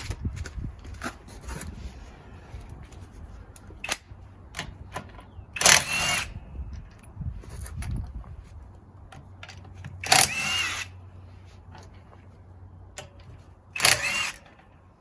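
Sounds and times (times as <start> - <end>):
sharp metal clicks: 3.8 - 7.0.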